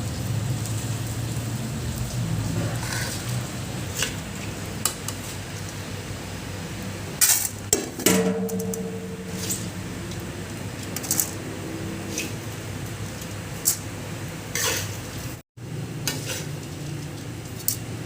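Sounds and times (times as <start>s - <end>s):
metal pots clinking and knocking: 7.3s - 9.8s
pot ringing: 8.1s - 9.9s.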